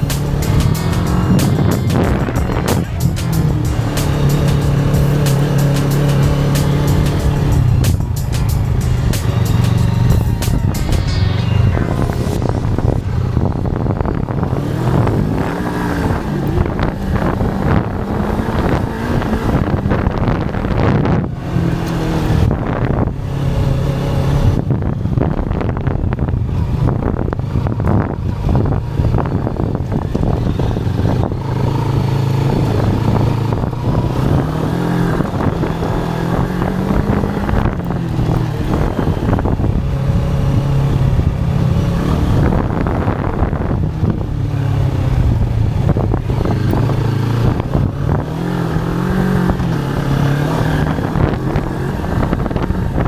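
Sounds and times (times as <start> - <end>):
motorcycle engine exhaust note: 0.0 - 53.0.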